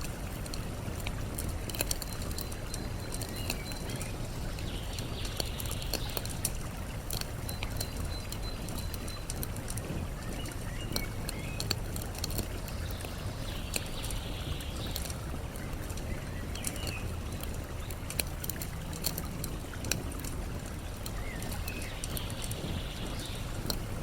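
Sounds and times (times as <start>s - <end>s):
campfire crackling and popping: 0.0s - 24.0s
flowing water: 0.0s - 24.0s
bird chirping: 1.7s - 6.5s, 7.4s - 18.0s, 20.8s - 23.8s.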